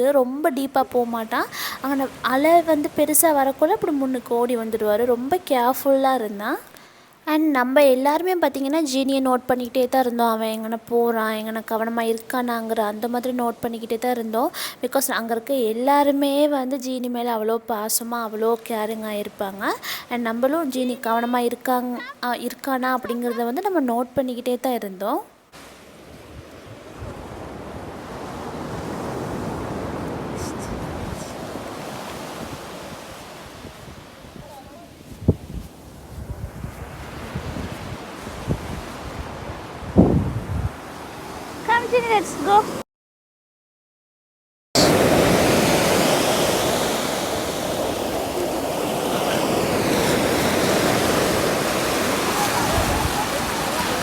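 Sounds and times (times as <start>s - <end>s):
rushing water: 0.0s - 6.8s, 25.5s - 35.1s, 40.8s - 42.8s, 44.8s - 54.0s
surf washing onto beach: 25.6s - 42.8s, 44.8s - 54.0s
wind on microphone: 25.9s - 41.8s, 44.8s - 54.0s.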